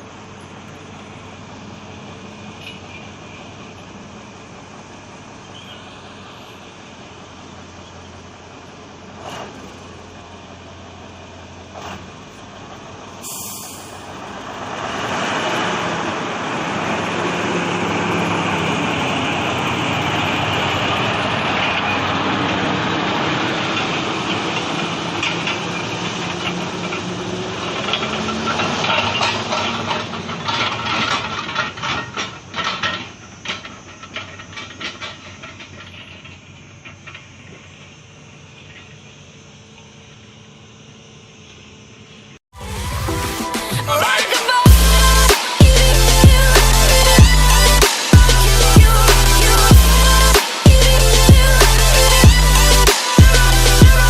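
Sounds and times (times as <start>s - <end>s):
heavy machine engine running: 0.0s - 40.1s, 42.6s - 54.0s
knocks and clatter: 18.0s - 37.9s.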